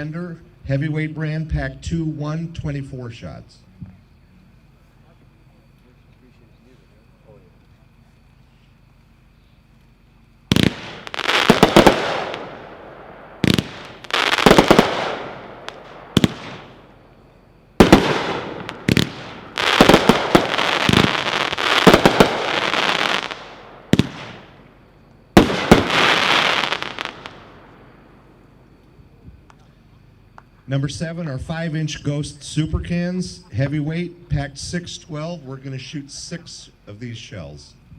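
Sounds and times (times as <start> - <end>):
fireworks cake firing bangs: 10.5 - 17.0, 17.8 - 24.7, 25.3 - 27.6.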